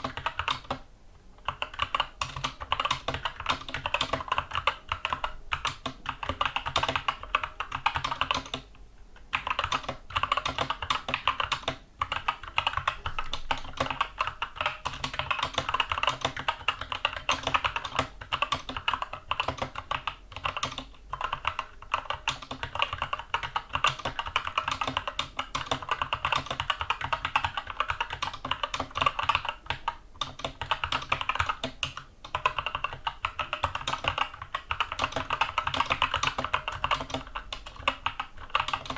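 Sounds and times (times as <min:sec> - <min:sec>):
fast mechanical keyboard typing: 0:00.0 - 0:00.8, 0:01.4 - 0:08.7, 0:09.3 - 0:38.9.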